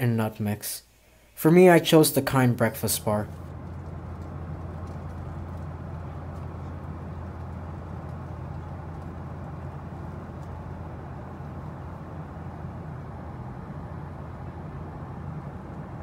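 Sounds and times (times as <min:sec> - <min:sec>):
airplane cabin drone: 0:02.6 - 0:16.0
faint clicks: 0:03.6 - 0:10.8.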